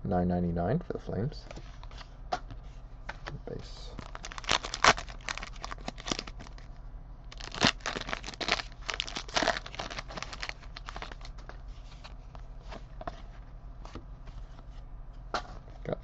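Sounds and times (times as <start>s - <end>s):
foil wrapper crinkling and tearing: 4.0s - 6.7s, 7.3s - 11.4s
cards being handled: 7.4s - 14.0s.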